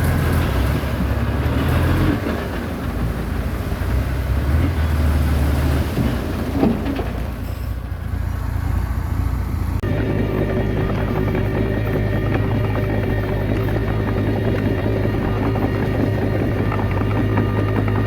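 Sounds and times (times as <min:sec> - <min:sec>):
bulldozer diesel engine running: 0:00.0 - 0:18.0
brief squeal: 0:07.4 - 0:07.9.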